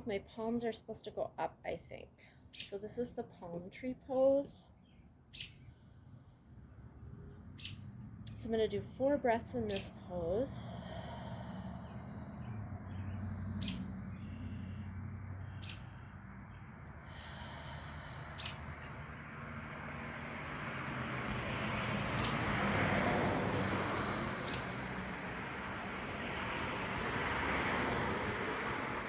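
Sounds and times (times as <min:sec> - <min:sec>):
bird chirping: 0:02.5 - 0:02.8, 0:04.8 - 0:05.8, 0:07.3 - 0:08.0, 0:11.9 - 0:16.8, 0:18.4 - 0:18.8, 0:22.2 - 0:22.4, 0:24.4 - 0:24.7
slow deep breaths: 0:05.6 - 0:07.3, 0:10.0 - 0:27.5.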